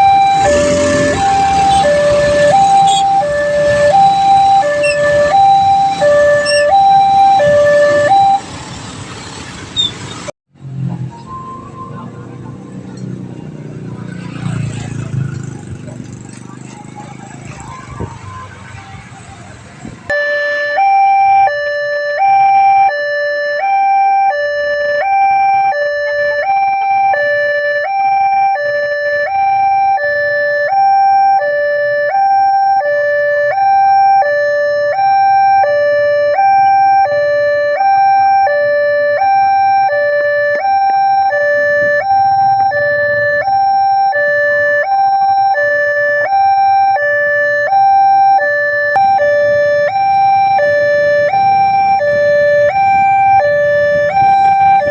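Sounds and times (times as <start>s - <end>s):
two-tone crossing alarm: 0.0s - 8.6s, 11.1s - 12.2s, 20.1s - 54.9s.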